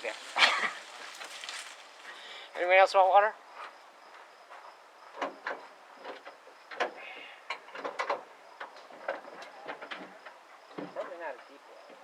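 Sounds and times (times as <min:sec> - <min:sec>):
sharp clicks and knocks: 0:05.1 - 0:11.2.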